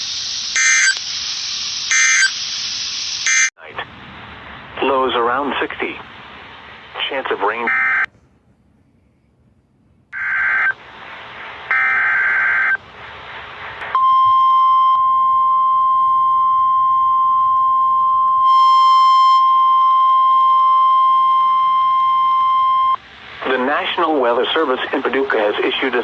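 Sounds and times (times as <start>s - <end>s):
raspy data bursts: 0.0s - 3.6s
single-pitch warning alarm tone: 0.5s - 1.0s, 1.9s - 2.4s, 3.2s - 3.5s, 7.7s - 8.1s, 10.2s - 10.8s, 11.7s - 12.8s, 13.9s - 23.0s.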